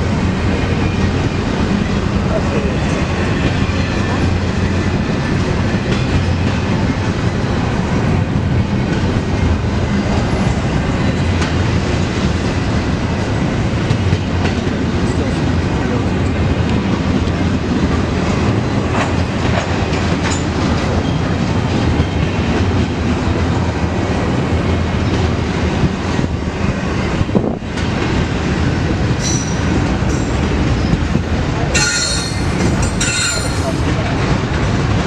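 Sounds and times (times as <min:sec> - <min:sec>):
freight train rumbling past: 0:27.9 - 0:34.8
train wheels squealing: 0:29.2 - 0:33.9
wheel clicks over rail joints: 0:31.3 - 0:33.9.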